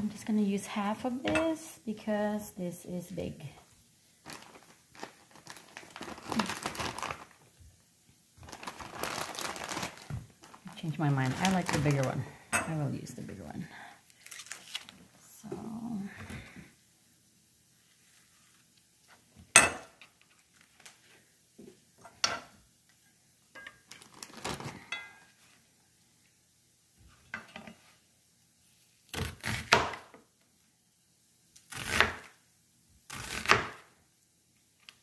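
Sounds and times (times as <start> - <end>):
knife cutting onion: 29.1 - 30.1, 31.7 - 32.4, 33.1 - 33.9.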